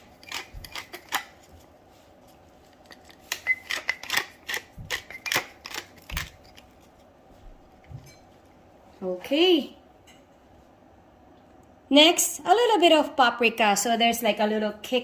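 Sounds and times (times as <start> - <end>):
pepper mill grinding: 0.0 - 1.6, 2.7 - 7.0.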